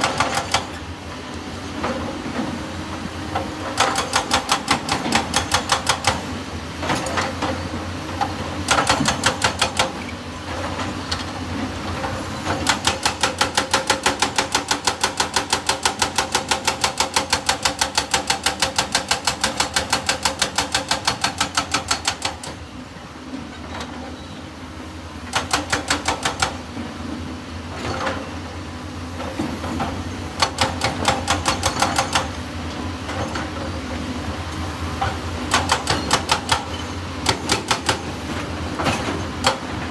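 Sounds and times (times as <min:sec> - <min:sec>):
excavator engine running: 0:27.6 - 0:39.9.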